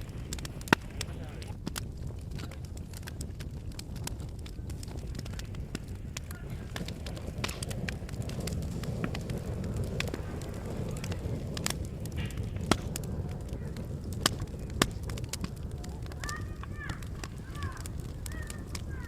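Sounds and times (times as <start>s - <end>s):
wood fire crackling and popping: 0.0s - 19.0s.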